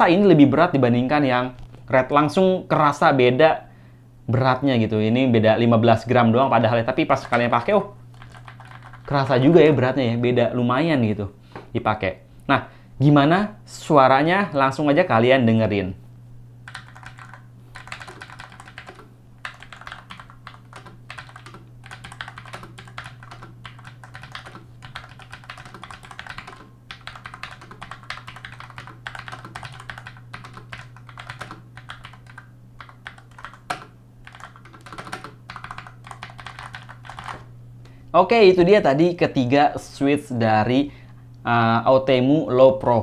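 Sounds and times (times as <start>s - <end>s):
steady low hum: 0.0s - 43.0s
keyboard typing clacks: 7.1s - 9.3s, 16.7s - 37.5s.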